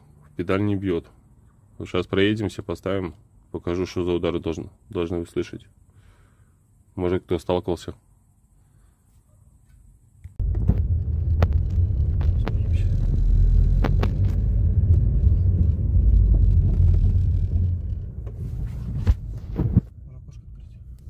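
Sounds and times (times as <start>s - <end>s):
car road rumble: 10.3s - 21.0s
sharp knocks: 10.4s - 18.4s.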